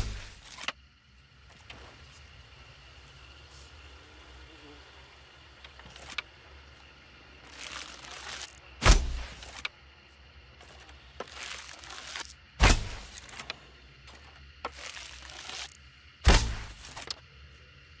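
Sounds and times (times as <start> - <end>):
arrow thunk: 8.8 - 9.4, 12.6 - 13.1, 16.2 - 16.8.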